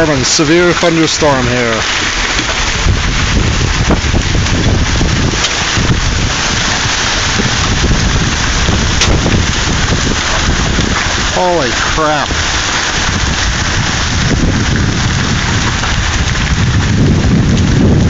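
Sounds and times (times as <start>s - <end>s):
hailstones clicking: 0.0s - 18.0s
heavy rain and hail: 0.0s - 18.0s
wind buffeting microphone: 0.0s - 18.0s.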